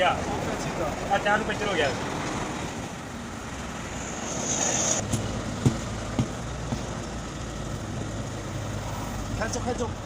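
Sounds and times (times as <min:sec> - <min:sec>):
sharp metallic knocks: 0:05.0 - 0:06.9.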